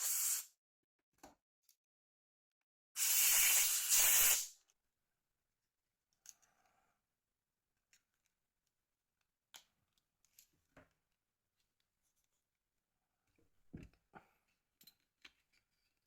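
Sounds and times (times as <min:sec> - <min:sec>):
loud hissing spray blasts: 0:03.0 - 0:04.5
small clicks of parts handled: 0:06.0 - 0:06.8, 0:07.8 - 0:12.4, 0:13.8 - 0:16.0.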